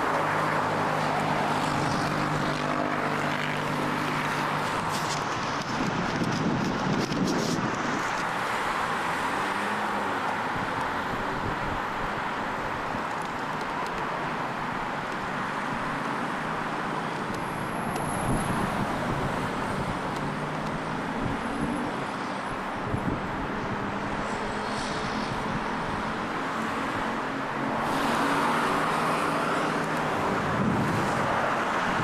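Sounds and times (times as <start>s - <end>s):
car engines humming: 0.0s - 32.0s
passing road traffic: 0.0s - 32.0s.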